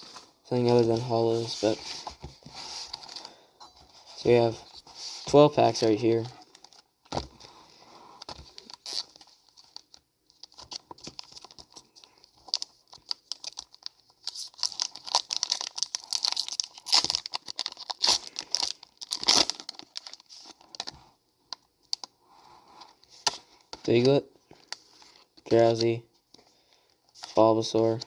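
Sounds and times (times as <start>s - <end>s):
foil wrapper tearing and crinkling: 8.3s - 11.9s, 12.5s - 21.0s.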